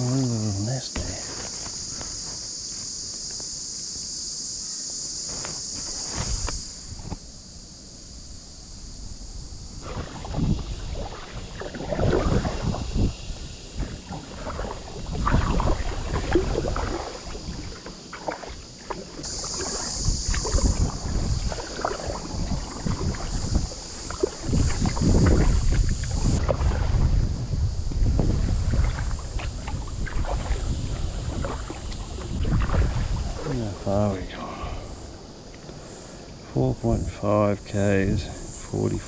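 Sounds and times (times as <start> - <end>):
high pulsing buzz: 0.0 - 35.4
wind on microphone: 8.7 - 35.3
paddle splashing in water: 9.8 - 34.8.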